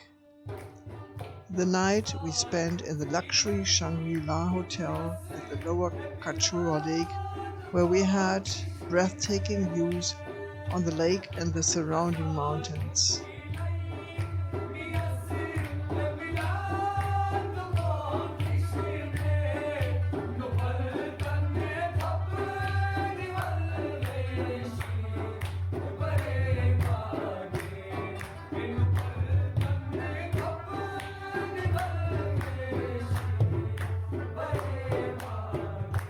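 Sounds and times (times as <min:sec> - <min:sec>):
hand drum beats: 0:00.5 - 0:36.0
person singing melody: 0:01.5 - 0:13.3.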